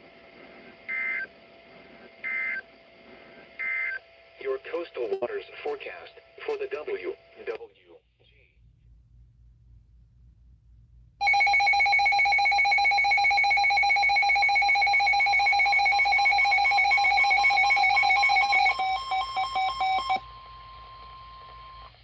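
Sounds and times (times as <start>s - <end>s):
steady warning tone: 11.2s - 20.2s.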